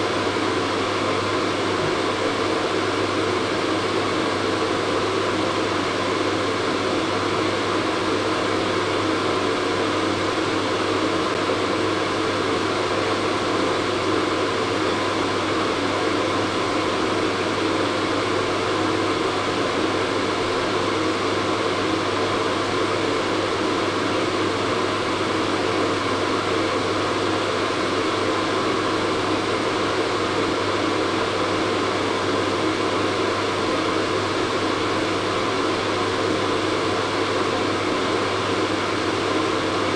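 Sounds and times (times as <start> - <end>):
hair dryer running: 0.0 - 39.9.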